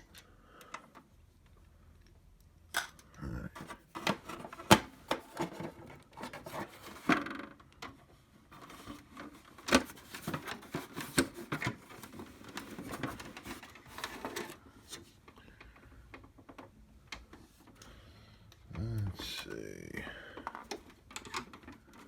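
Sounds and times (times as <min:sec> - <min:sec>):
plastic rubbing and scraping: 0:03.6 - 0:07.6, 0:08.5 - 0:15.3.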